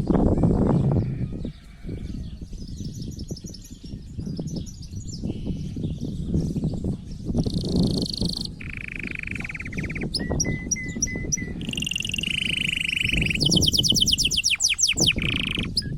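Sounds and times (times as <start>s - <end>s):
canary singing trills: 7.3s - 15.9s.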